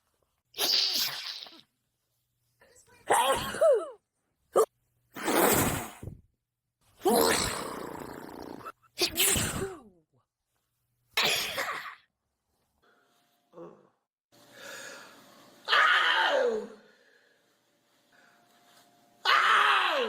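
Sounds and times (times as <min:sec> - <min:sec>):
person sneezing: 0:03.1 - 0:04.0, 0:04.6 - 0:06.2, 0:07.0 - 0:10.0, 0:11.2 - 0:12.1.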